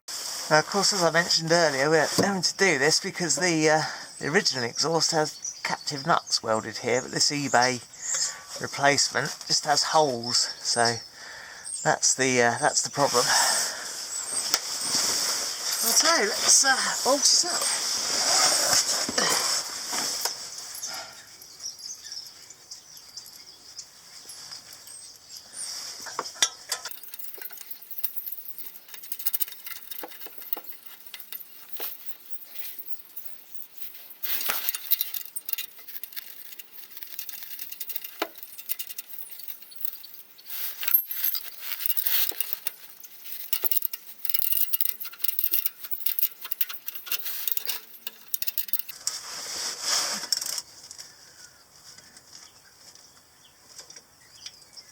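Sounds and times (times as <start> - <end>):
hand tools clinking and knocking: 26.0 - 49.0
rapid ratchet clicking: 26.9 - 49.0.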